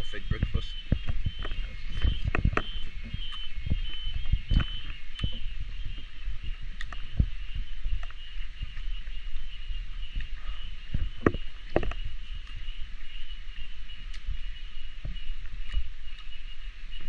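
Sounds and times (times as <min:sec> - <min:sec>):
microphone handling: 0:00.0 - 0:12.9
cicadas droning: 0:00.0 - 0:17.0
wind rumble on microphone: 0:00.0 - 0:17.0.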